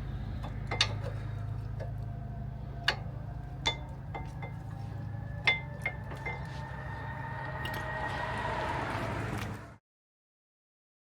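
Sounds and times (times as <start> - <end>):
steady low hum: 0.0 - 9.8
metal brake parts clinking: 0.4 - 2.1, 2.8 - 6.6.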